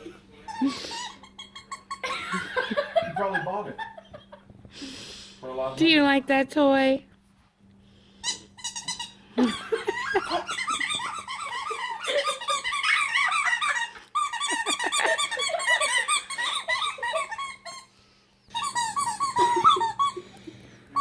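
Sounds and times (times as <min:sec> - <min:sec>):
squeaky toy squeaking: 0:00.5 - 0:02.0, 0:08.2 - 0:09.2, 0:10.5 - 0:17.9, 0:18.5 - 0:20.2.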